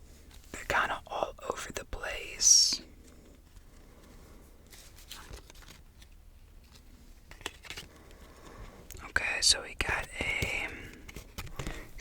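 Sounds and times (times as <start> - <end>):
trading cards handled: 3.0 - 9.1, 9.8 - 12.0.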